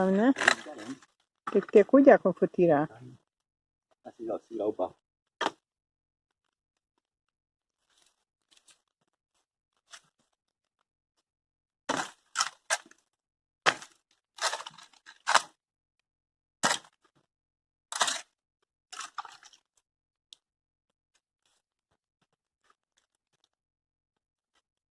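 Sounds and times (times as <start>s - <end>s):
dry wood and mud cracking: 0.0s - 2.0s, 11.9s - 15.6s, 17.9s - 19.8s.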